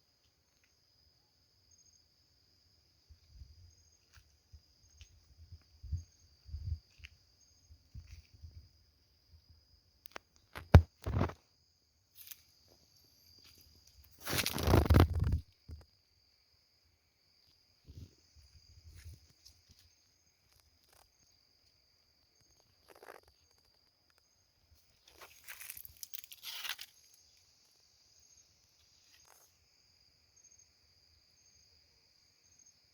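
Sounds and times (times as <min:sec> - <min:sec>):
crickets trilling: 0:00.0 - 0:32.9
rustling crunch: 0:13.4 - 0:15.5, 0:25.0 - 0:27.2.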